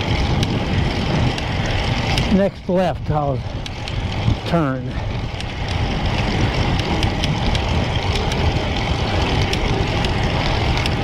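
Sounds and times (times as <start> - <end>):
bicycle tyre road noise: 0.0 - 11.0
wind on microphone: 0.0 - 11.0.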